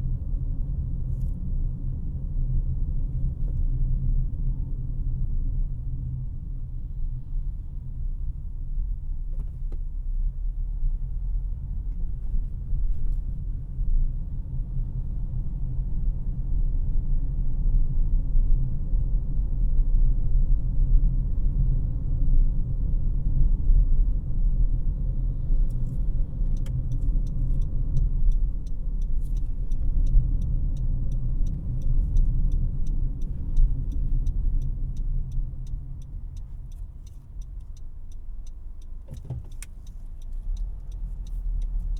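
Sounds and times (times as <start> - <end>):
car cabin road rumble: 0.0 - 41.9
turn signal ticking: 25.6 - 41.9.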